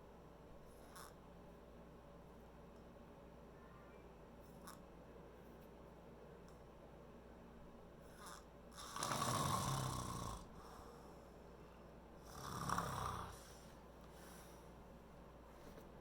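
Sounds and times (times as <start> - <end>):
person snoring: 8.1 - 10.7, 12.2 - 13.6.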